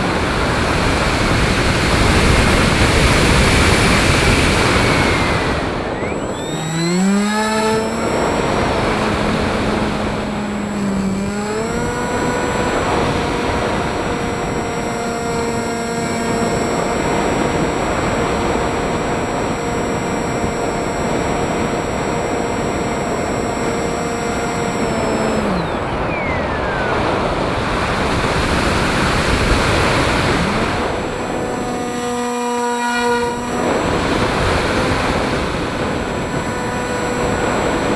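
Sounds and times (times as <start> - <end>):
drone motors whining: 0.0 - 37.9
wind noise: 0.0 - 37.9.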